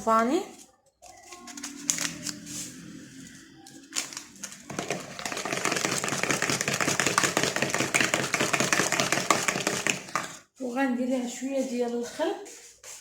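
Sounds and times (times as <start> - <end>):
whisk clattering against bowl: 4.7 - 10.4.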